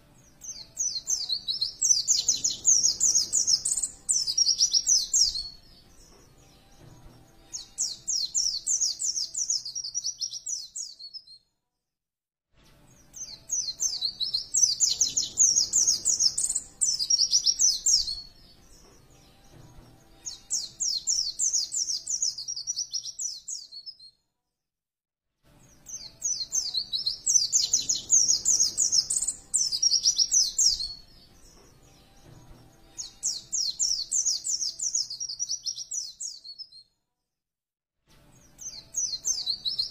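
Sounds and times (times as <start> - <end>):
bird high-pitched chattering song: 0.4 - 5.6, 13.2 - 18.3, 25.9 - 31.0.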